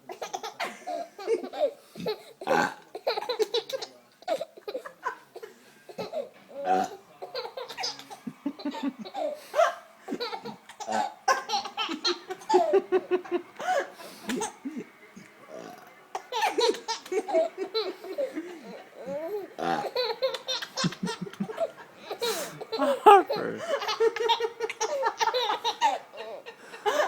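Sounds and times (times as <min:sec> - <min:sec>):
baby laughing: 0:05.9 - 0:09.4, 0:10.1 - 0:12.8, 0:16.1 - 0:27.0.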